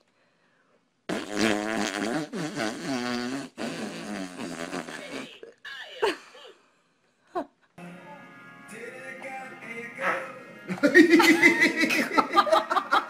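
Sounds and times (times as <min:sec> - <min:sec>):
baby farting: 0:01.1 - 0:05.4.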